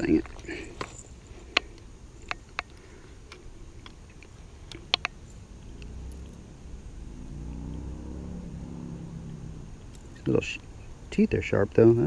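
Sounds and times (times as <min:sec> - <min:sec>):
distant engine hum: 0:00.0 - 0:12.0.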